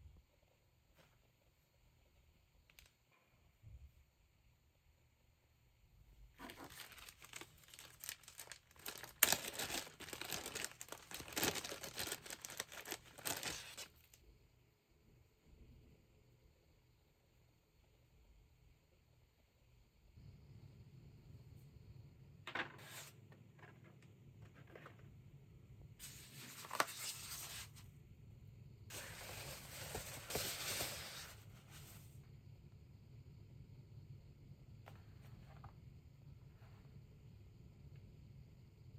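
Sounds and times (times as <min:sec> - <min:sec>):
crinkly packaging unwrapped: 0:06.4 - 0:14.2, 0:26.0 - 0:27.7.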